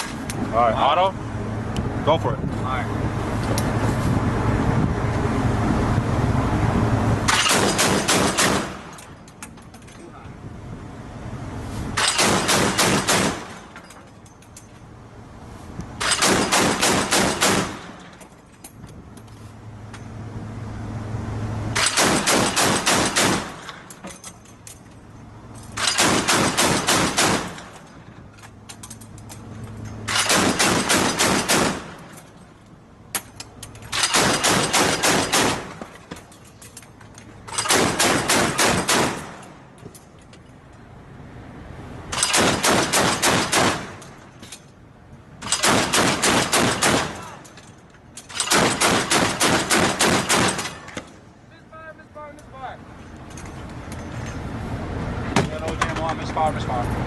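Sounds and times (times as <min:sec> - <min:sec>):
automatic gunfire bursts: 0:12.2 - 0:13.5, 0:16.1 - 0:17.9, 0:21.8 - 0:23.6, 0:25.8 - 0:27.6, 0:30.2 - 0:32.0, 0:34.1 - 0:35.7, 0:37.7 - 0:39.2, 0:45.6 - 0:47.2.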